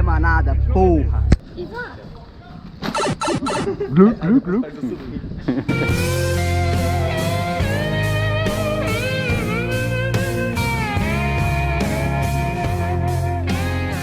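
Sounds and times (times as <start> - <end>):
rock music with electric guitar: 5.7 - 14.0.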